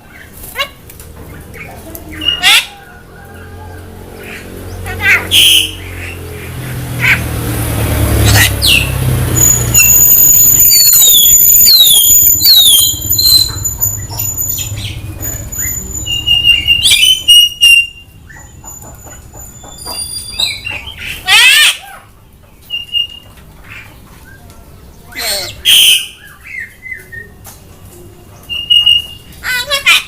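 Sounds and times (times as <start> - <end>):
bird calling: 3.6 - 7.3, 8.2 - 22.0
high falling whistles: 9.4 - 14.8.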